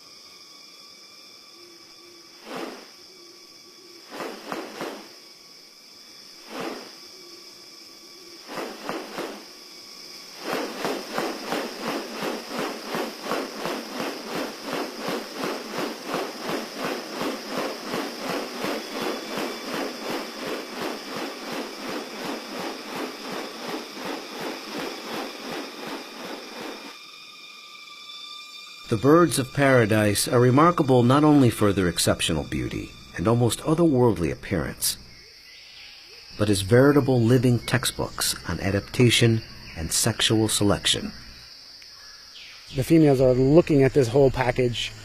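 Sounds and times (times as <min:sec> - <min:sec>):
high insect drone: 0:00.0 - 0:45.0.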